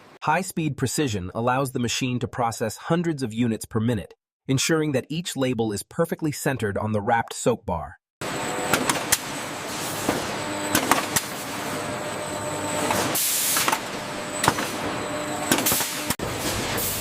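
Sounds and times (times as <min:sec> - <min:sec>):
packaging machinery running: 0:08.2 - 0:17.0
air hiss: 0:13.0 - 0:13.7.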